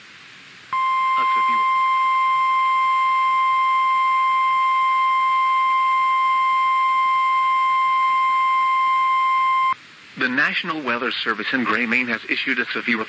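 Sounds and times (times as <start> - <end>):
steady warning alarm tone: 0.8 - 9.8.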